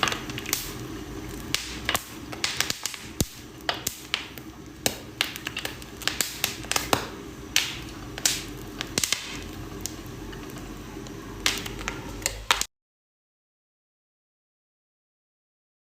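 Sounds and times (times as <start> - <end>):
low steady hum: 0.0 - 12.7
popcorn popping: 0.0 - 12.7.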